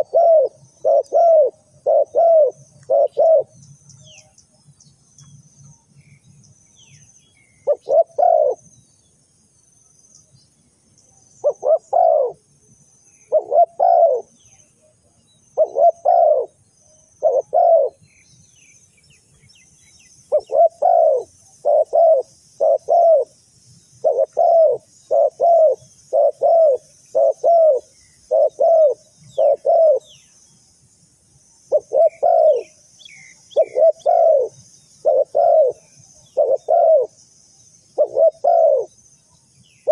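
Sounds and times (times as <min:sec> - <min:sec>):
dove cooing: 0:00.0 - 0:03.6, 0:07.6 - 0:08.6, 0:11.4 - 0:12.4, 0:13.3 - 0:14.4, 0:15.6 - 0:16.6, 0:17.2 - 0:18.0, 0:20.3 - 0:23.4, 0:24.0 - 0:30.2, 0:31.7 - 0:37.2, 0:37.9 - 0:38.9.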